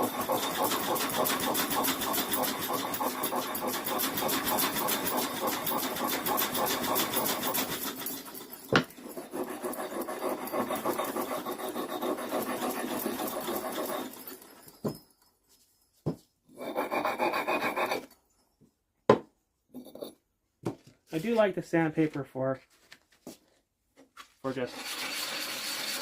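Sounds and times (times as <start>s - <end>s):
scrubbing metal with abrasive: 0.0s - 14.5s.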